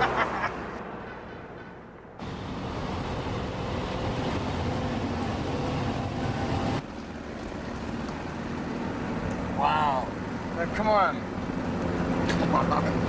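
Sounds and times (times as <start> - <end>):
rushing travel noise: 0.0 - 13.0
vehicle engine running: 2.2 - 6.8.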